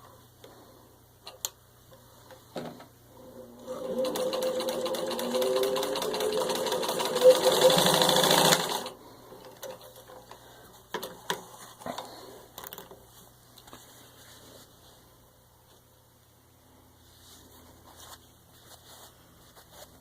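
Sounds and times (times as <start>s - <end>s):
sewing machine motor hum: 3.2s - 9.0s
sewing machine needle chatter: 3.7s - 8.9s.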